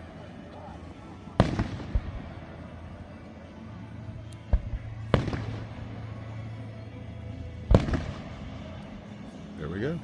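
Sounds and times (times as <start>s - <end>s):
low steady hum: 0.0s - 10.0s
fireworks bangs: 1.3s - 2.4s, 4.5s - 5.8s, 7.7s - 8.4s.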